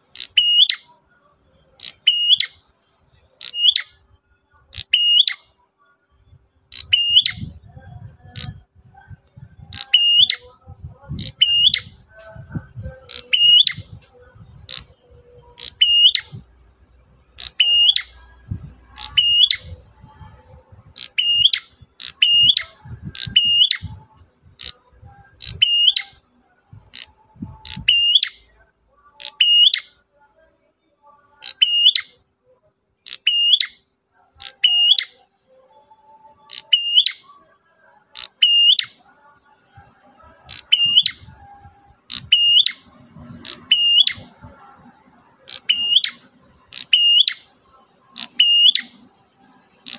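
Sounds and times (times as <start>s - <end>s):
bird whistling sharp notes: 0.2s - 0.8s, 1.8s - 2.6s, 3.4s - 4.0s, 4.7s - 5.4s, 6.7s - 7.6s, 9.7s - 10.4s, 11.1s - 12.0s, 13.0s - 14.0s, 15.5s - 16.4s, 17.4s - 18.2s, 18.9s - 19.8s, 21.0s - 24.0s, 33.1s - 33.8s, 40.5s - 41.4s, 42.1s - 44.3s, 45.5s - 47.5s, 48.2s - 48.9s.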